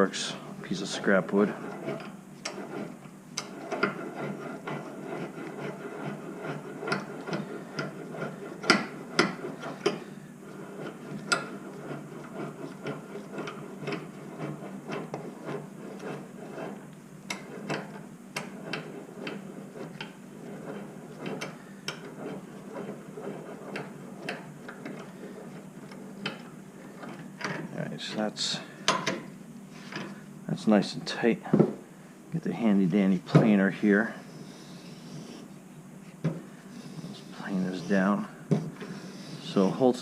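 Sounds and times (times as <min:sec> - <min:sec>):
vise clicking and knocking: 0:01.5 - 0:28.2, 0:28.8 - 0:30.2.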